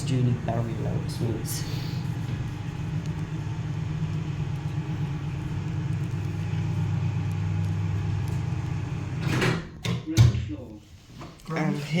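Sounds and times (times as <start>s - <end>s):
lift drive hum and rumble: 0.0s - 9.4s.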